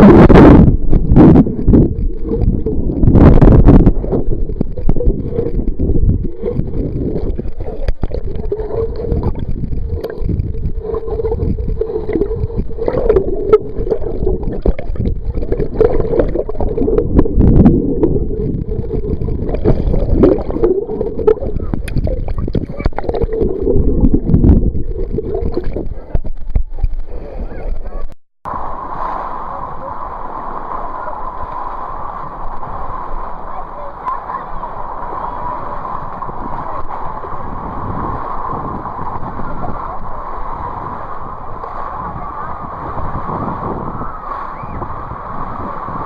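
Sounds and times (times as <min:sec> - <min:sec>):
water sloshing and splashing: 0:00.0 - 0:27.8
low rumble: 0:00.0 - 0:33.6.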